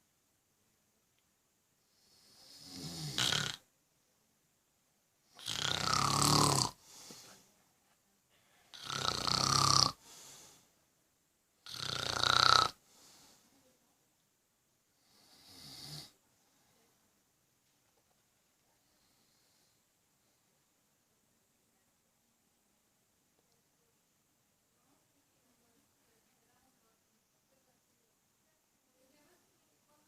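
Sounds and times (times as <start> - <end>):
man snoring loudly: 2.0 - 3.6, 5.4 - 6.8, 8.8 - 10.0, 11.6 - 12.8, 15.1 - 16.2.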